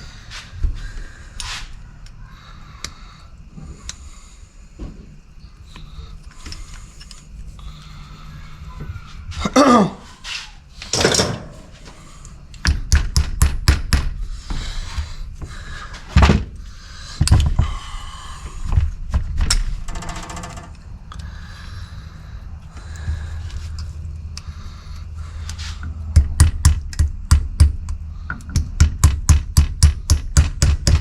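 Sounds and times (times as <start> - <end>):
metal parts and tools clunking: 10.8 - 12.3.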